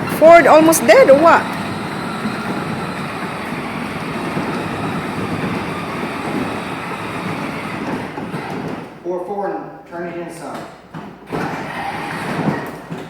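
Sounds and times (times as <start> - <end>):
plastic wheels rolling: 0.0 - 9.0, 11.3 - 13.0
adult speaking: 9.0 - 10.6.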